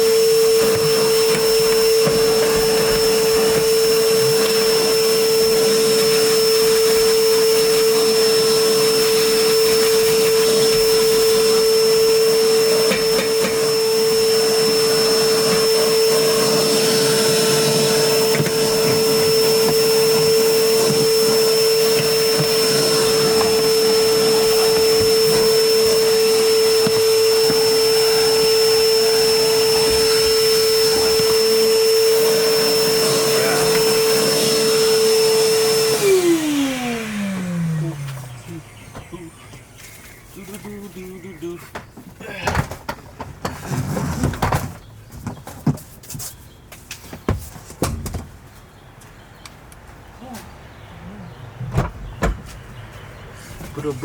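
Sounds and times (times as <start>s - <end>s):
vacuum cleaner running: 0.0s - 41.6s.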